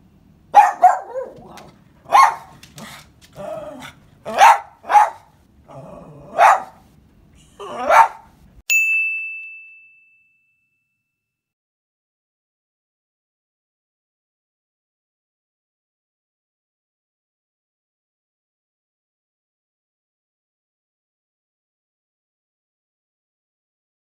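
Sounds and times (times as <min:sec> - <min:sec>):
dog barking: 0:00.5 - 0:03.0, 0:04.2 - 0:05.4, 0:06.3 - 0:06.8, 0:07.7 - 0:08.3
bell-like ding: 0:08.7 - 0:11.3.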